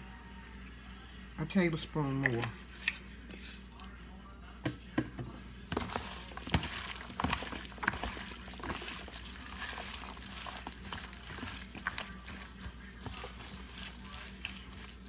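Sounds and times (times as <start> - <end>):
wet rustling of food being stirred: 1.8 - 4.0, 5.6 - 15.0.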